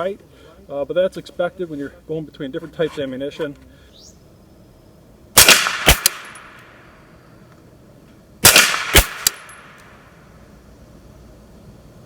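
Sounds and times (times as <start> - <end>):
suppressed gunshots: 5.4 - 6.9, 8.4 - 10.0
sharp crack: 5.4 - 7.0, 8.4 - 10.2.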